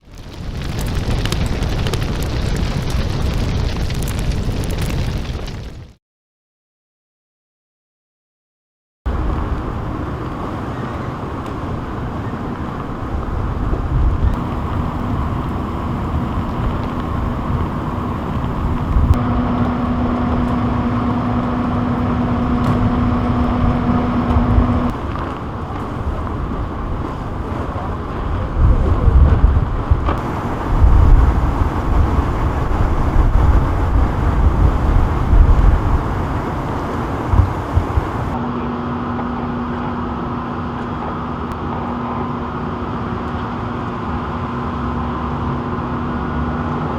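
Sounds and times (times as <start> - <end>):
heavy low rumbles: 9.1 - 38.4
steady low hum: 9.1 - 38.4
vehicle engines passing: 9.1 - 38.4.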